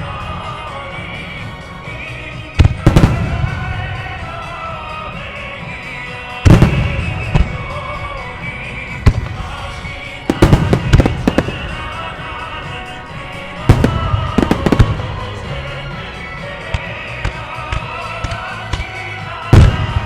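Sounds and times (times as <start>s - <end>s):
music over loudspeakers: 0.0s - 20.0s
fireworks bursting with sharp bangs: 2.4s - 5.2s, 6.3s - 8.2s, 8.8s - 20.0s.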